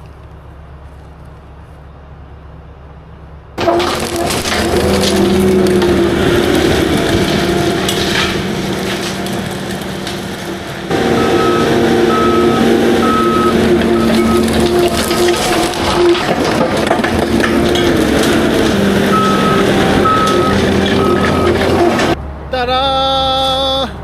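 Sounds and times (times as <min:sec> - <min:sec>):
mulcher grinding trees and brush: 0:03.6 - 0:22.2
skid steer running hard: 0:03.6 - 0:22.2
backup alarm beeping: 0:10.9 - 0:16.2, 0:18.4 - 0:22.2.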